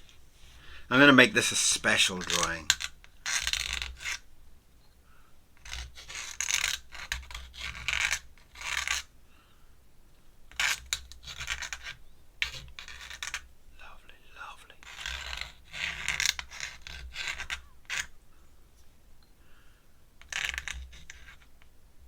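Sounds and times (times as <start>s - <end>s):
pen scratching on paper: 5.6s - 9.1s, 14.8s - 18.1s, 20.3s - 21.5s.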